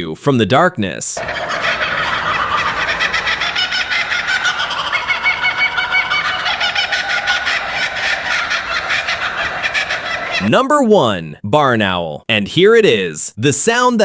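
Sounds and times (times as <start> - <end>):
kookaburra laughing call: 1.2 - 10.5.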